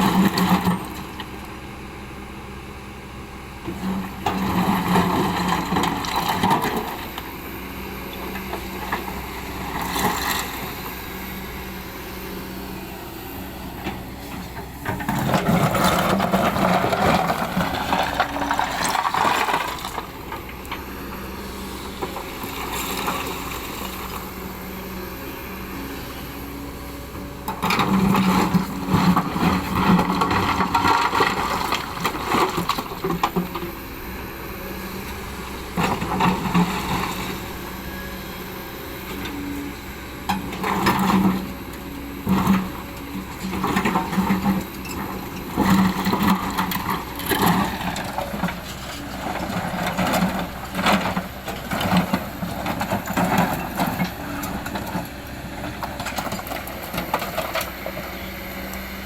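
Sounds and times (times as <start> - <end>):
excavator diesel engine running: 0.0 - 59.0.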